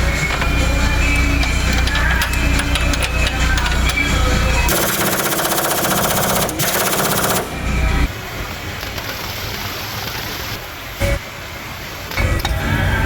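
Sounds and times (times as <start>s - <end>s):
impact wrench hammering: 0.2s - 7.6s.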